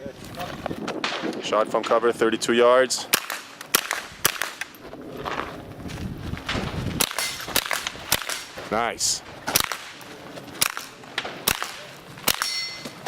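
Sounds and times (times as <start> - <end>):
rifle shots: 3.1 - 4.8, 7.0 - 8.7, 9.5 - 10.0, 10.6 - 13.0
shuffling movement: 4.8 - 11.1.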